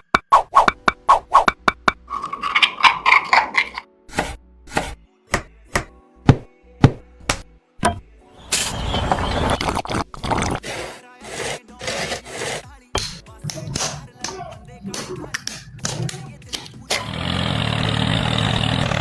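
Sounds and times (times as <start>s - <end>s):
continuous scraping: 10.6s - 12.7s.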